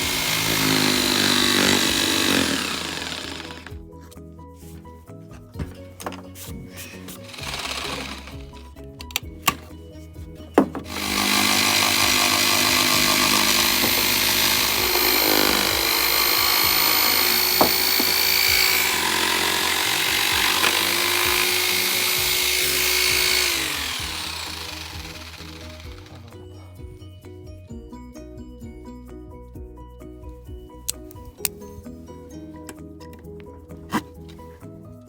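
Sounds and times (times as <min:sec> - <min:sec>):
power saw cutting wood: 0:00.0 - 0:03.8, 0:06.6 - 0:08.7, 0:10.6 - 0:26.5
background music: 0:00.0 - 0:35.0
knocks: 0:10.5 - 0:16.0.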